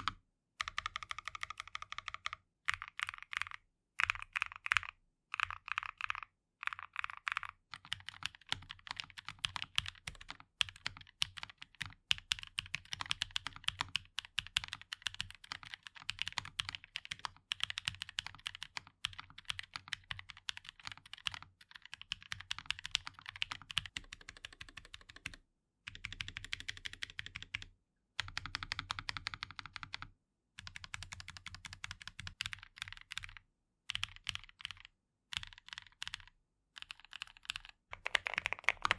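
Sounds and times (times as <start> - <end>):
mechanical keyboard key clacks: 37.2 - 38.9.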